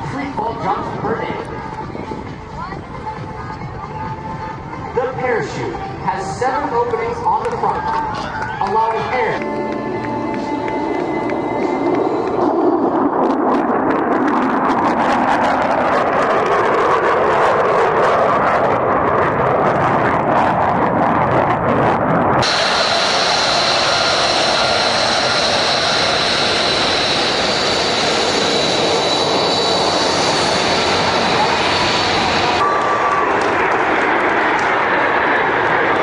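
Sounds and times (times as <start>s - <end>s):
high whine: 0.0s - 36.0s
jet engine roar: 0.0s - 36.0s.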